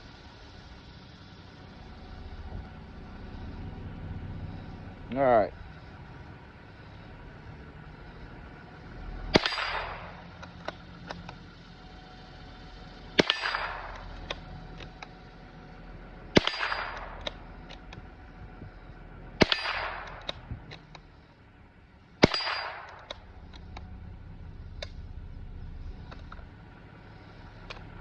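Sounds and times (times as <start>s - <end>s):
rifle shots: 9.3s - 10.4s, 13.2s - 14.3s, 16.3s - 17.5s, 19.4s - 20.4s, 22.2s - 23.2s.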